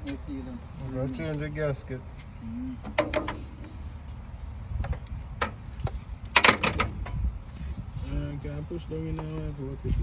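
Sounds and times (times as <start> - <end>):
steady low rumble: 3.4 - 10.0.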